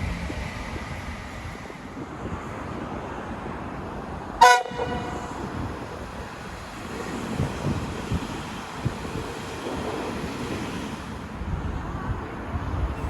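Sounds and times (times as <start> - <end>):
wind and rail noise: 0.0 - 13.0
train horn toot: 4.4 - 5.4.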